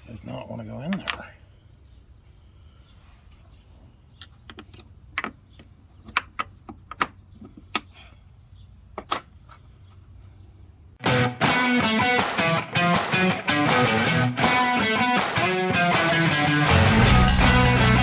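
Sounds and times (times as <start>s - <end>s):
guitar music: 11.0s - 18.0s.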